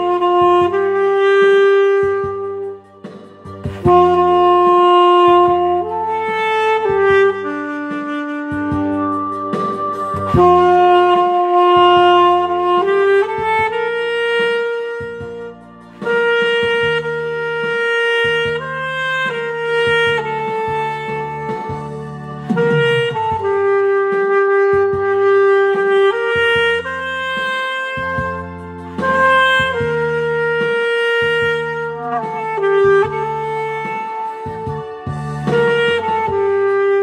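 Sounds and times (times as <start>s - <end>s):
backing track with bass: 0.0s - 37.0s
saxophone slow melody: 0.0s - 37.0s.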